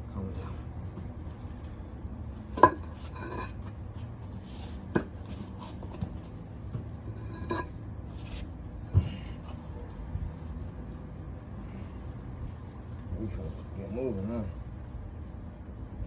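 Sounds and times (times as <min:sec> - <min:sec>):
concrete pavers knocking: 0:02.5 - 0:03.7, 0:04.9 - 0:05.4, 0:06.7 - 0:07.7.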